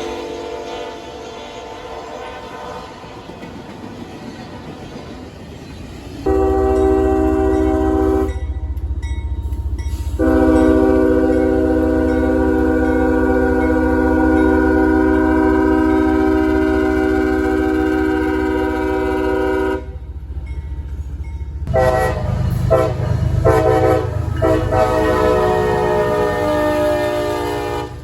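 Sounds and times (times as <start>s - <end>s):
locomotive air horn blasts: 0.0s - 1.4s, 6.3s - 8.5s, 10.1s - 20.0s, 21.7s - 28.0s
steady low rumble: 19.9s - 25.4s.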